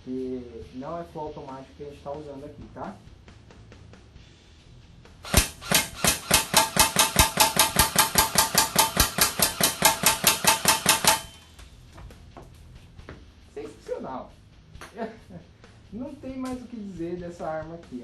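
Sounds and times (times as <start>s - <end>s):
airsoft rifle firing shots: 5.2s - 11.4s.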